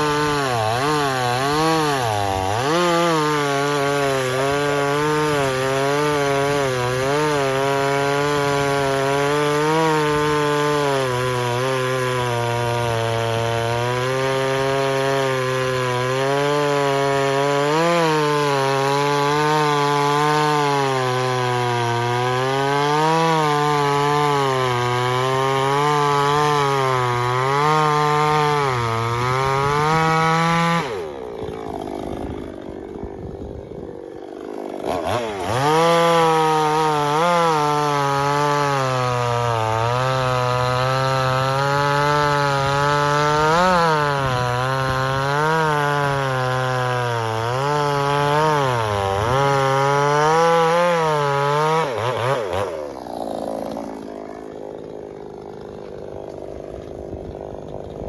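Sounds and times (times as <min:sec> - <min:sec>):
chainsaw cutting wood: 0:00.0 - 0:58.0.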